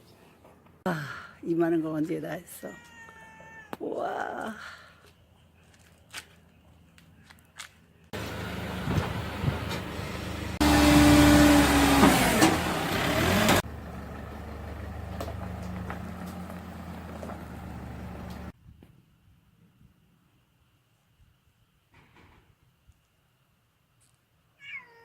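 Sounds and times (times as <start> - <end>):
engine running with whine: 8.2 - 18.5.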